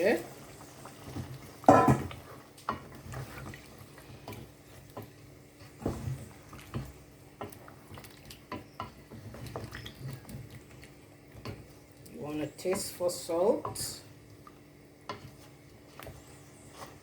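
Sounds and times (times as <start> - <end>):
utensils clinking on a pot: 1.6 - 2.9.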